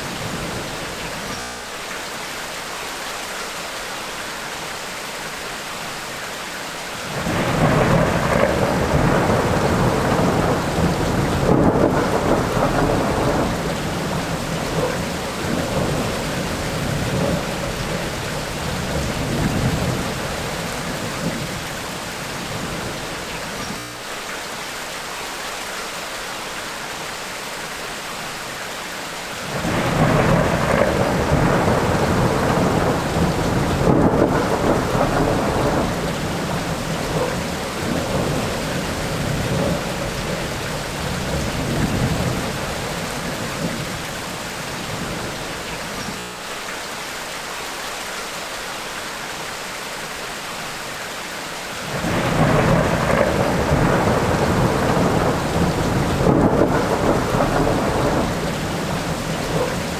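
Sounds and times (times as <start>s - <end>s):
steady rain: 0.0s - 59.9s
rolling thunder: 7.1s - 23.8s, 29.4s - 46.2s, 51.8s - 59.9s.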